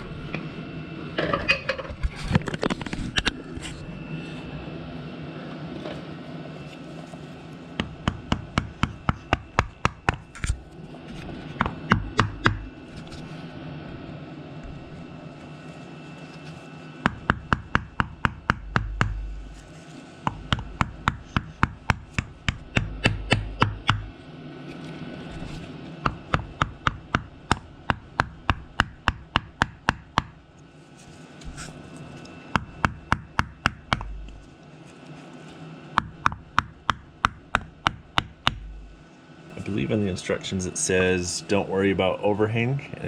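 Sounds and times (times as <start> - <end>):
rapid hammer taps on wood: 11.6 - 12.7, 17.1 - 19.6, 20.2 - 24.1, 26.0 - 30.4, 32.6 - 34.5, 36.0 - 38.9.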